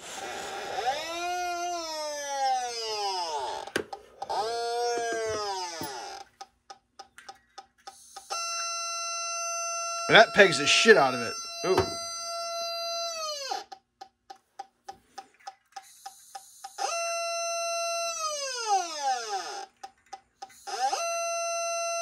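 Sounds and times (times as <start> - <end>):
gas detector alarm tone and beeps: 8.0 - 12.9.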